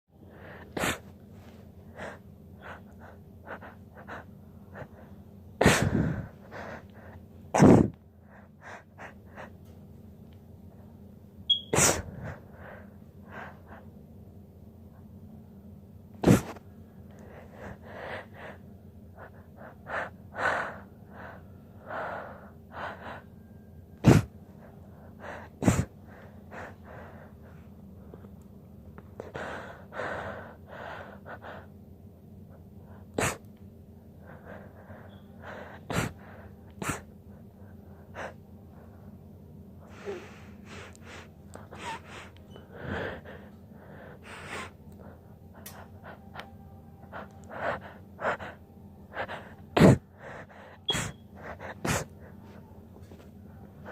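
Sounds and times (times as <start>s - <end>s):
stifled sneezes: 0.8s - 1.1s, 7.6s - 8.0s, 11.6s - 12.2s, 16.2s - 16.6s, 24.0s - 24.3s, 25.6s - 25.9s, 33.2s - 33.4s, 36.8s - 37.1s, 49.8s - 50.1s, 50.9s - 52.1s.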